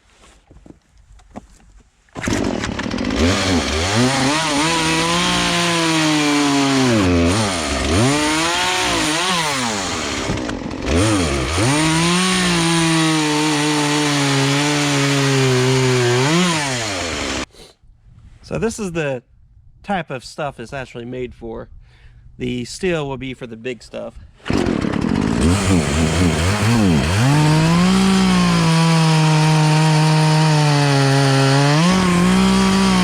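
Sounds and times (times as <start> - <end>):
chainsaw engine revving: 2.2 - 17.5, 24.4 - 33.0.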